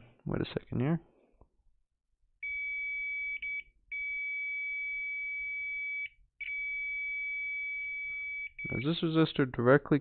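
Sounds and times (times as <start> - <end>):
multimeter high beep: 2.4 - 9.0.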